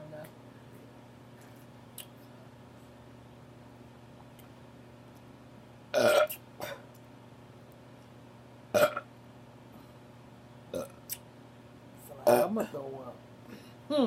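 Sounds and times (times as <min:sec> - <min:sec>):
person burping loudly: 0:05.9 - 0:06.8, 0:08.7 - 0:09.1, 0:10.7 - 0:11.0.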